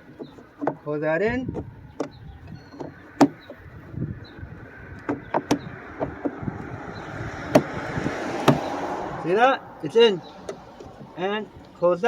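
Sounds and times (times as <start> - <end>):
plastic clicks and knocks: 0.0 - 0.8, 1.5 - 3.6, 4.9 - 6.4
rushing noise: 6.4 - 11.4.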